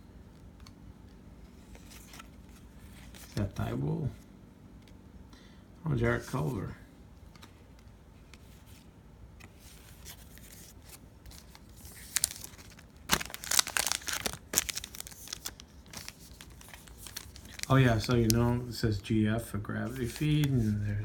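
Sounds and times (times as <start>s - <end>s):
plastic wrapper tearing and crinkling: 10.2s - 18.4s.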